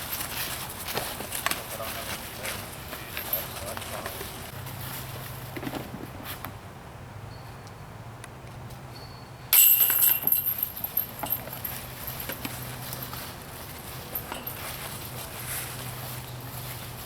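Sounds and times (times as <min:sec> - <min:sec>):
disc hitting basket chains: 0:09.5 - 0:15.4.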